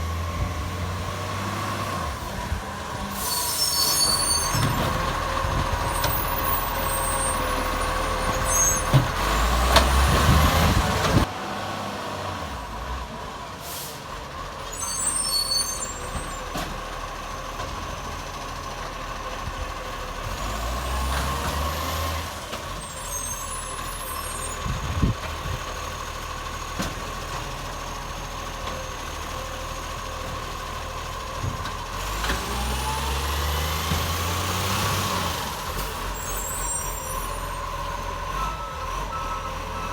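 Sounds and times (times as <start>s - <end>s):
garbage truck diesel engine revving: 0.0s - 39.9s
air brakes hissing: 3.0s - 4.8s, 13.6s - 16.4s, 35.6s - 37.8s.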